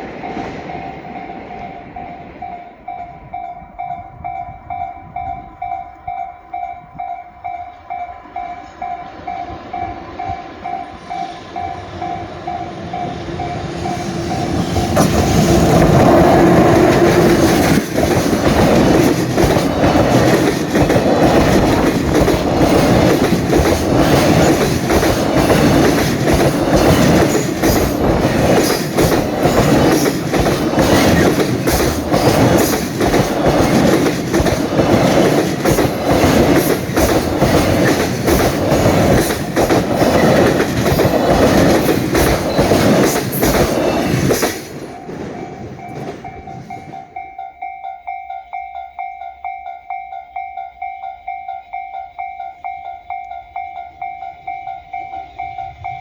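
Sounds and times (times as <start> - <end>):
train passing: 0.0 - 56.0
wheels clacking over rail joints: 13.3 - 47.3.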